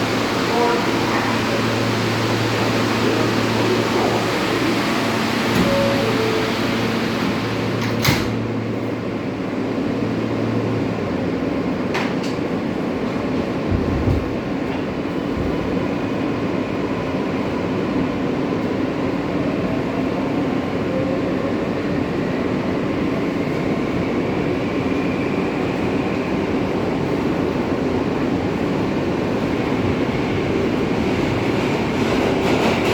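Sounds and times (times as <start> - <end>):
subway car rumble: 0.0 - 32.9.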